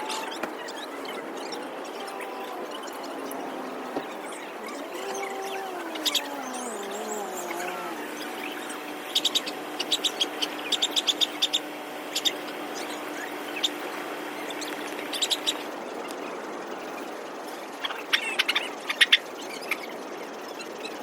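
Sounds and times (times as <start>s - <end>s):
steady low hum: 0.0s - 16.6s
bird chirps: 0.0s - 17.1s.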